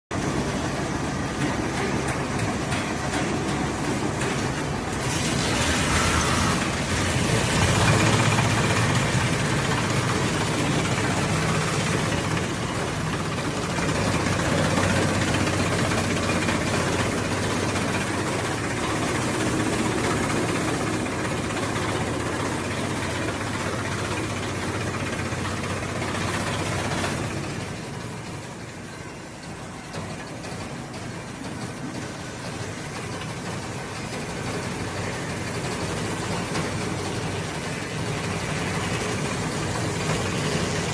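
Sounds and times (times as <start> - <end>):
cutting machine drone: 0.2 - 28.9.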